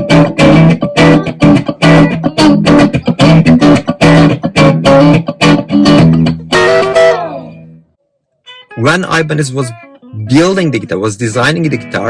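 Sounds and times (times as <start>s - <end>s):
electric guitar chord stabs: 0.0s - 7.8s.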